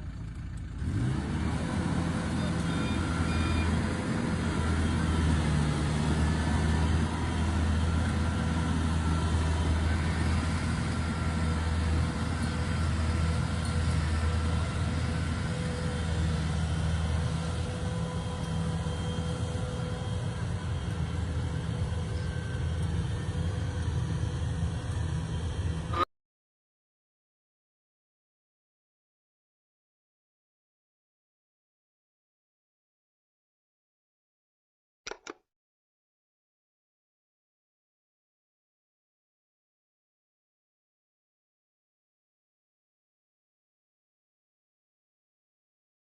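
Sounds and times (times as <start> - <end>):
combine harvester engine drone: 0.0 - 26.1.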